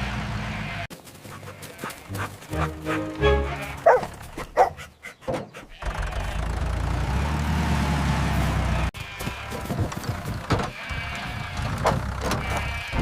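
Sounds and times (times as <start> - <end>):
dog barking: 3.8 - 4.8.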